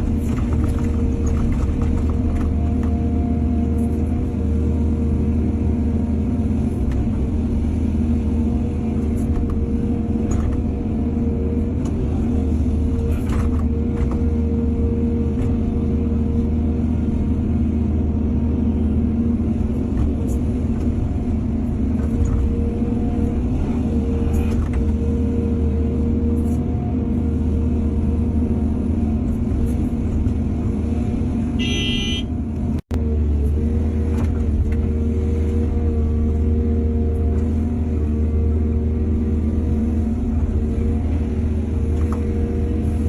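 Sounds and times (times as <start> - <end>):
excavator diesel engine running: 0.0 - 43.0.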